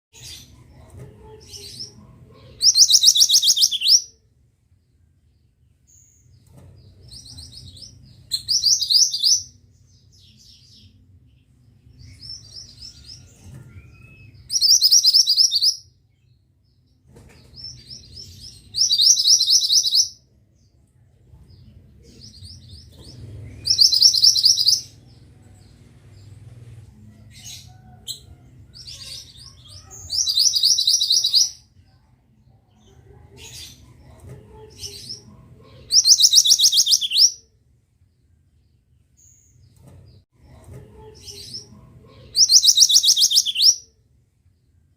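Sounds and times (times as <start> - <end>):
faint bird chirps: 0.2 - 4.2, 5.9 - 11.0, 12.0 - 16.3, 17.2 - 20.2, 22.1 - 25.8, 27.1 - 31.7, 34.9 - 37.5, 41.2 - 43.9.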